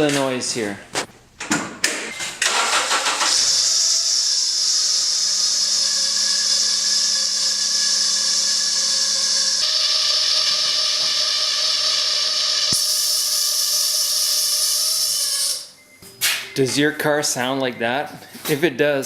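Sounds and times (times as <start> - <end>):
car engine starting and running: 2.4 - 12.9.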